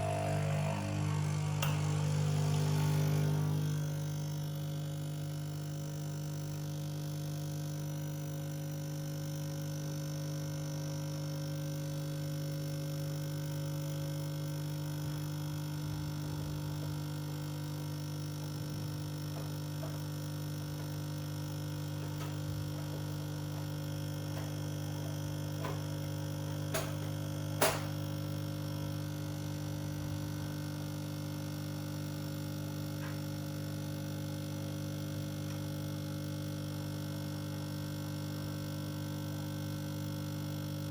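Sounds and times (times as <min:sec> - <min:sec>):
low electric hum: 0:00.0 - 0:06.8.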